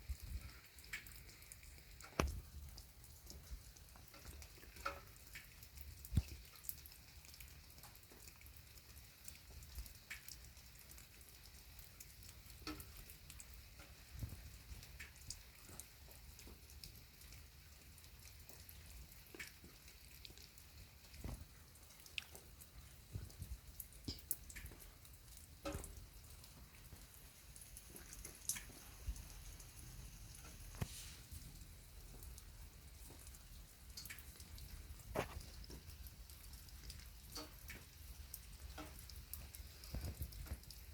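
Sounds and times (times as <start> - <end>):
rain pattering: 0.0 - 40.9
water drips: 0.0 - 40.9.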